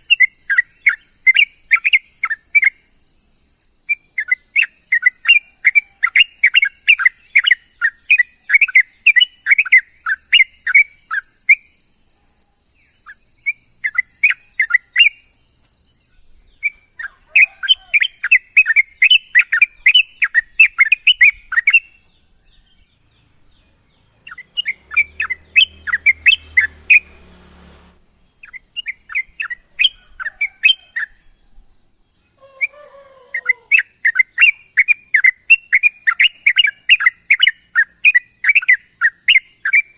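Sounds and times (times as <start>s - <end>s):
bulbul chattering calls: 16.2s - 31.2s, 32.4s - 39.8s
high hiss: 19.8s - 29.7s.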